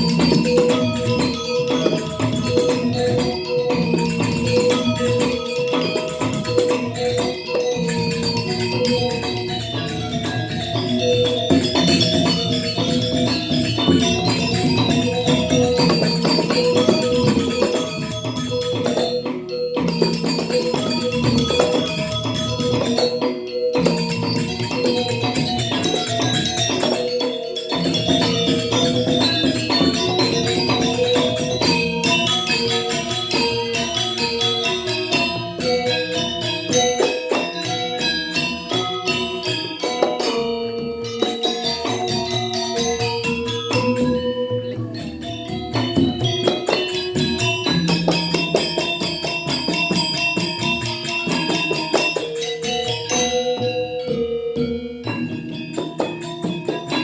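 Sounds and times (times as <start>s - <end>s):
bronze metallophones playing: 0.0s - 57.0s.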